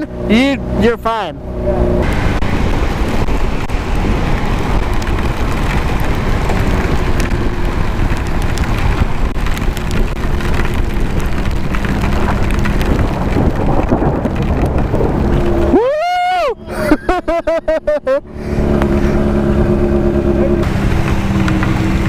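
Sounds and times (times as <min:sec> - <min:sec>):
raindrops crackling on camera: 0:01.4 - 0:22.0
wind rushing on helmet: 0:01.4 - 0:22.0
motorcycle engine running: 0:18.2 - 0:22.0.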